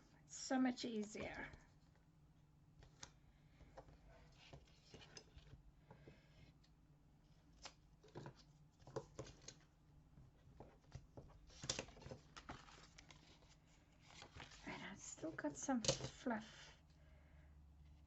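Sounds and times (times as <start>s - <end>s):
paper and tape rustling: 10.7s - 16.4s.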